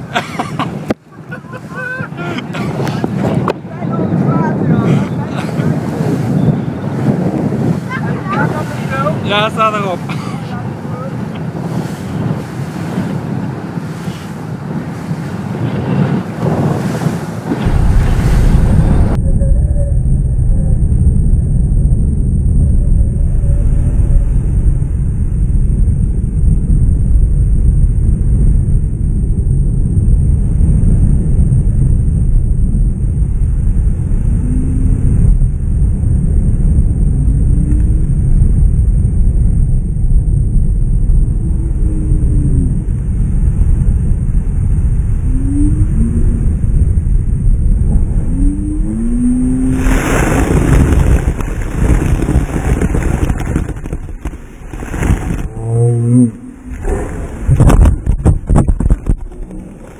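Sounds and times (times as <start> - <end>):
hull pounding on waves: 0.0 - 59.9
motorboat engine rumble: 0.0 - 59.9
water and spray rushing: 5.2 - 19.2, 42.7 - 59.9.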